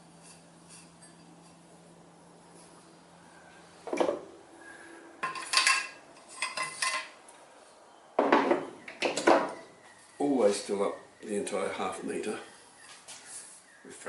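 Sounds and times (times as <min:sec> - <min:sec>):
metal parts clinking: 0:05.2 - 0:07.1.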